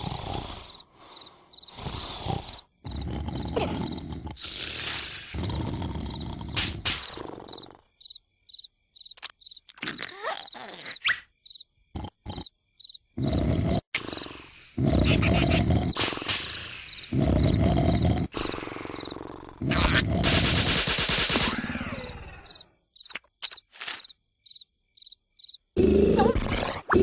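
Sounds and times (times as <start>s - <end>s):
loud cartoon snores: 0.0s - 7.9s, 11.9s - 12.5s, 13.2s - 20.4s, 25.8s - 27.0s
crickets chirping: 0.0s - 19.6s, 21.7s - 26.1s.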